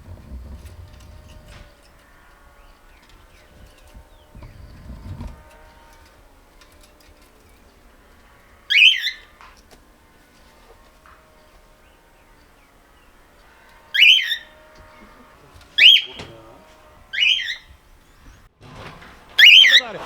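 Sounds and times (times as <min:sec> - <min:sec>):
cockatoo squawking: 0:08.6 - 0:09.4, 0:12.9 - 0:18.4, 0:19.4 - 0:20.0.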